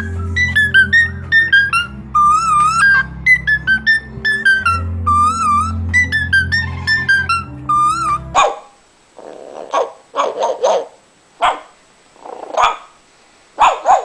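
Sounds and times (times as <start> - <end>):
whistle-like music melody: 0.0 - 8.4
dog barking: 8.4 - 8.8, 9.6 - 11.8, 12.5 - 13.0, 13.6 - 14.0.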